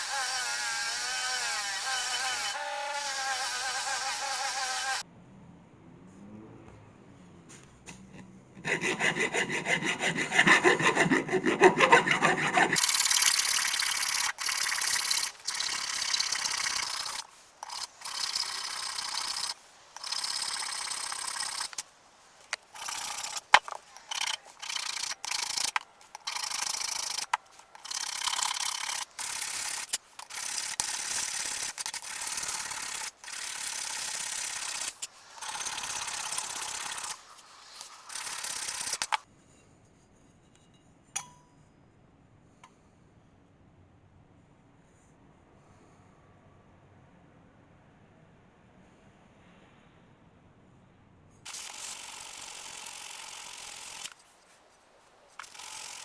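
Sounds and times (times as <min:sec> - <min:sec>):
hand file rasping on metal: 0:08.6 - 0:21.8, 0:22.5 - 0:39.2.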